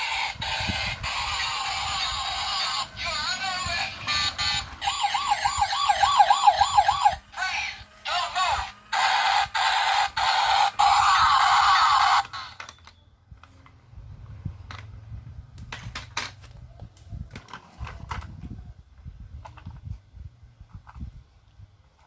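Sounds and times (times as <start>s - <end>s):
harsh electronic toy sound: 0.0s - 12.7s
plastic toys clicking and knocking: 12.0s - 13.8s, 14.6s - 15.0s, 15.6s - 16.5s, 17.3s - 18.4s.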